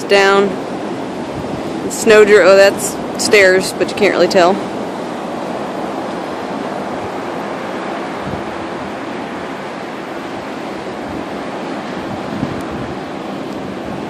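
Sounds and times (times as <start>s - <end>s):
surf breaking on beach: 0.0s - 14.0s
wind: 0.0s - 14.0s.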